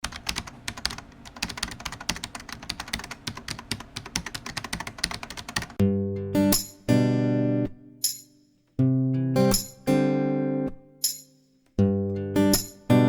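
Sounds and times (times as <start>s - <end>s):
keyboard typing: 0.0s - 5.8s
music with plucked chords: 5.8s - 8.2s, 8.8s - 11.2s, 11.8s - 13.0s.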